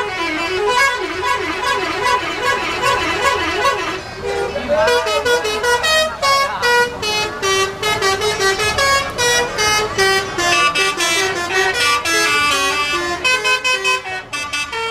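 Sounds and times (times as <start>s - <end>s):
multi-tone bus horn melody: 0.0s - 14.9s.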